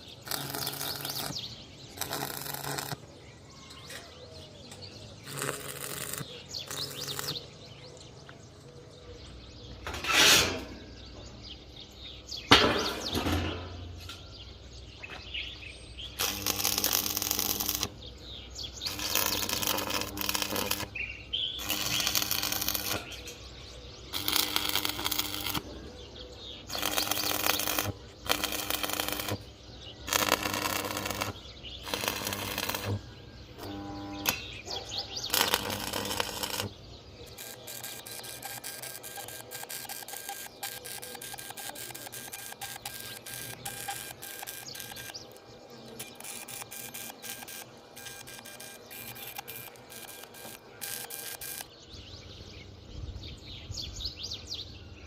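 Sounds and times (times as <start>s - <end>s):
arc welding crackling: 0.0s - 3.1s, 5.1s - 7.6s, 16.0s - 25.8s, 26.4s - 51.8s.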